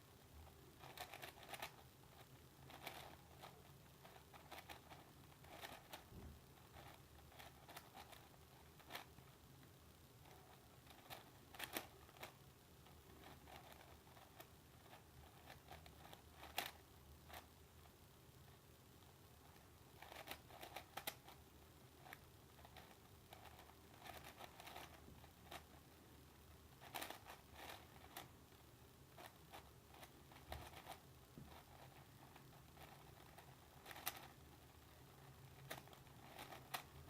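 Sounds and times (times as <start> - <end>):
speed cube clicking: 0.8 - 6.1, 6.7 - 9.2, 10.2 - 12.4, 13.2 - 17.5, 20.0 - 21.4, 22.0 - 25.7, 26.8 - 28.3, 29.2 - 34.4, 35.1 - 37.0.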